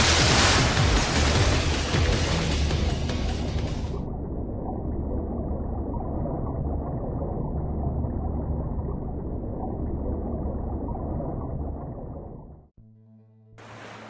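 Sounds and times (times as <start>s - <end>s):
muffled underwater rumble: 1.6s - 12.7s.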